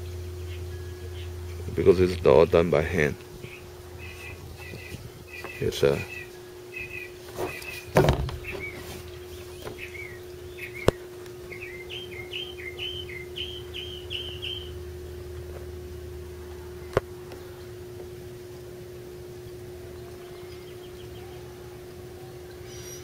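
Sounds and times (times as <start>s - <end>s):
steady low hum: 0.0s - 23.0s
small bird chirping: 3.4s - 14.8s
rustling handling noise: 7.2s - 9.8s.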